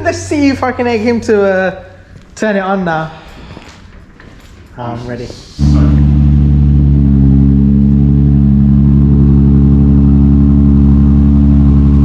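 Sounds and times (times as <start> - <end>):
car engine idling loudly: 5.6 - 12.0.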